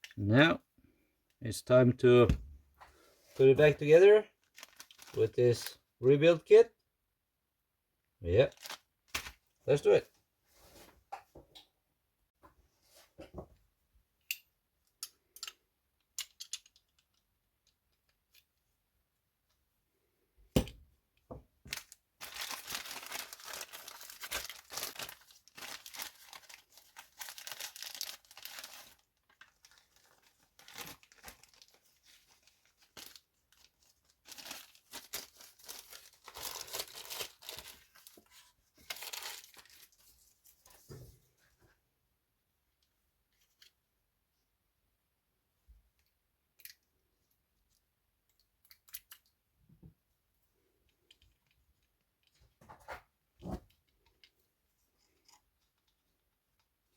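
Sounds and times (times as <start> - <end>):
packaging tearing and crinkling: 4.5 - 5.2, 8.5 - 9.4, 21.7 - 33.7, 34.3 - 38.2, 38.8 - 39.9.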